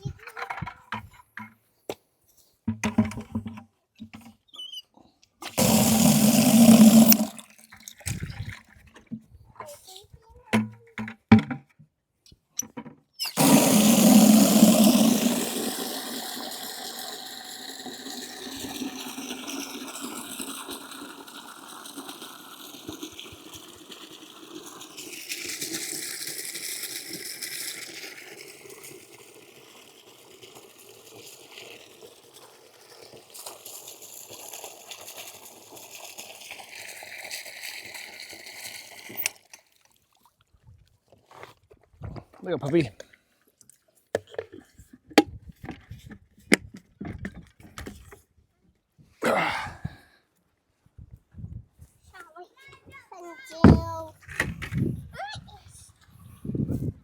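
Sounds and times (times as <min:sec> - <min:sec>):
water running into a bucket: 0:05.4 - 0:09.1, 0:13.2 - 0:40.5, 0:52.9 - 0:55.0.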